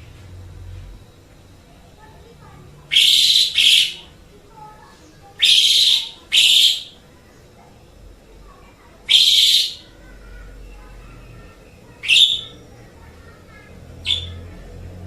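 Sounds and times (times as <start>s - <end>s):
starling harsh scratchy calls: 2.9s - 4.1s, 5.2s - 7.0s, 9.0s - 14.7s.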